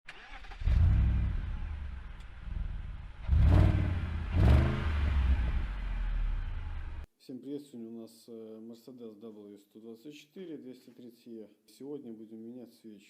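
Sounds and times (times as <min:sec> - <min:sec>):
car engine revving: 0:00.1 - 0:07.1.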